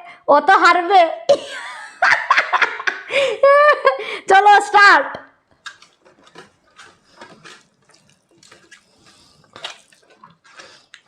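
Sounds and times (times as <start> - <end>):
wet chewing and squelching: 5.5 - 11.0.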